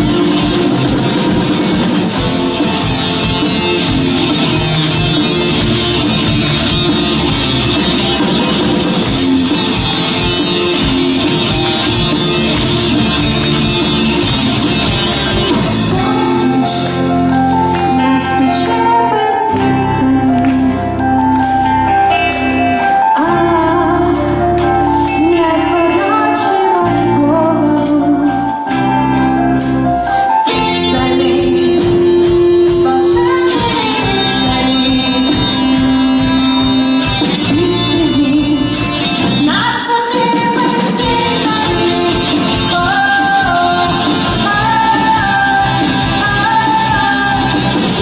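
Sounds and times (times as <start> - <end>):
rock band playing: 0.0 - 48.0
woman singing: 15.8 - 21.0, 22.8 - 28.6, 30.4 - 48.0.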